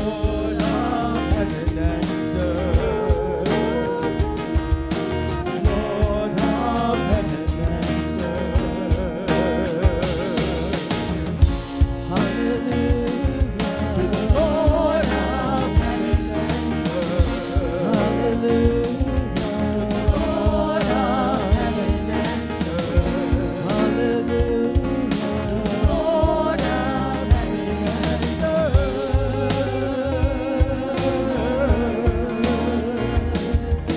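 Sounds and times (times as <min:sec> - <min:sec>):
band playing steady beat: 0:00.0 - 0:33.9
person singing with vibrato: 0:00.0 - 0:33.9.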